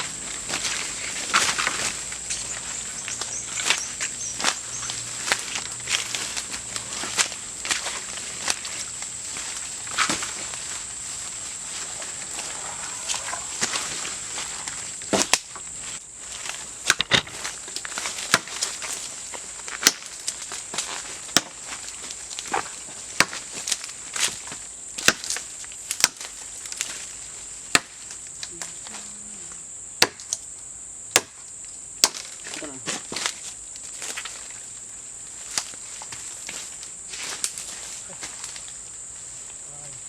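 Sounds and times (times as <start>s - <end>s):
high-pitched insect drone: 0.0s - 22.9s, 23.5s - 40.0s
wood being chopped: 15.1s - 15.6s, 16.8s - 18.9s, 19.8s - 21.6s, 22.5s - 23.8s, 25.0s - 26.4s, 27.7s - 28.1s, 30.0s - 30.4s, 31.1s - 33.4s.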